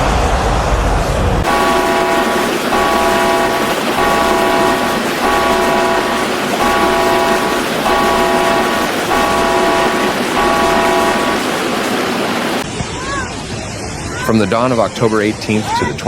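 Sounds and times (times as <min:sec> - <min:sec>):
multi-tone warning horn blasts: 0:01.4 - 0:12.0
steady background noise: 0:01.4 - 0:15.7.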